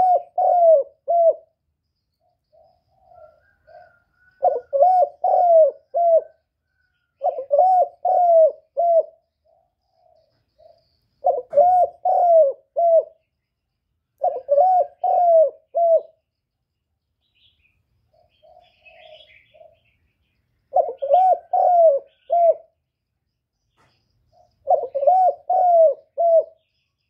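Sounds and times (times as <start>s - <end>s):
dove cooing: 0.0s - 1.6s, 2.5s - 13.3s, 14.2s - 16.2s, 18.1s - 20.0s, 20.7s - 22.8s, 24.3s - 26.7s.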